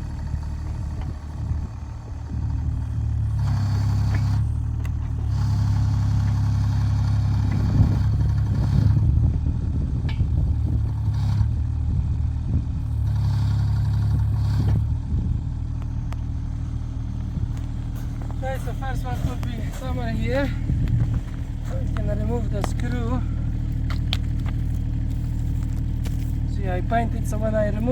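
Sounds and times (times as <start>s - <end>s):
excavator diesel engine running: 0.0s - 27.9s
metal knocks and clatter: 10.0s - 10.6s.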